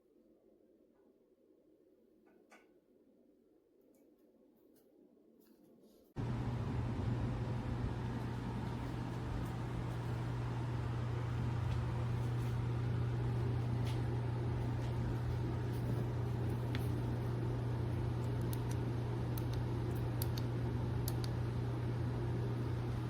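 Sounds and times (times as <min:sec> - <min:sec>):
steady low hum: 0:06.2 - 0:23.0.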